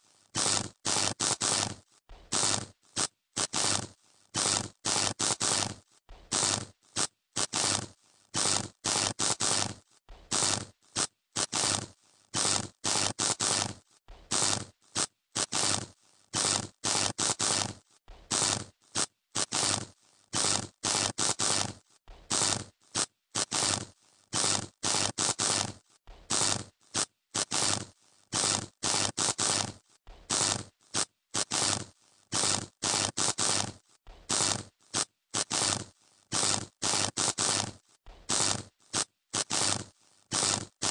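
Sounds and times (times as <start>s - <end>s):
electrical arcing crackle: 2.4s - 5.8s, 8.4s - 10.7s, 11.4s - 14.7s, 19.4s - 22.7s, 38.3s - 40.9s.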